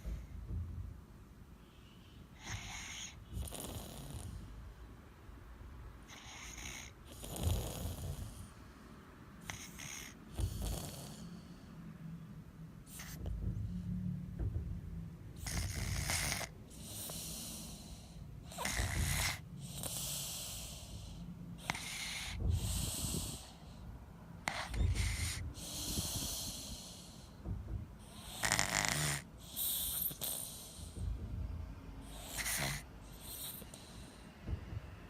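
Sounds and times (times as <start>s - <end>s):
baby snoring: 2.4s - 4.5s, 6.0s - 8.6s, 9.4s - 11.5s, 15.4s - 23.8s, 24.4s - 27.4s, 28.0s - 31.1s, 32.0s - 34.2s.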